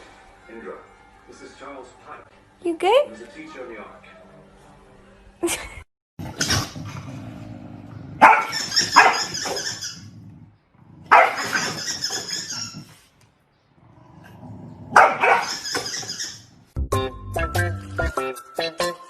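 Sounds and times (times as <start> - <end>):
dog barking: 8.2 - 9.4, 11.1 - 11.7, 14.9 - 15.6.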